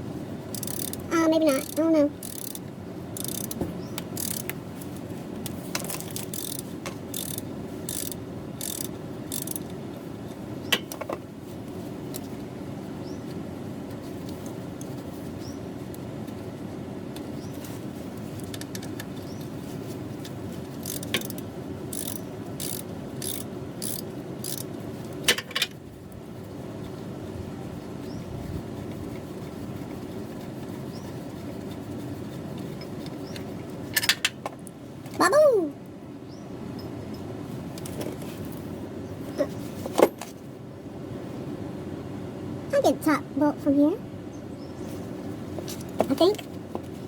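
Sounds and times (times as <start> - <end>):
socket ratchet clicking: 0.5 - 2.6, 3.2 - 4.6, 5.8 - 9.7, 20.8 - 24.7.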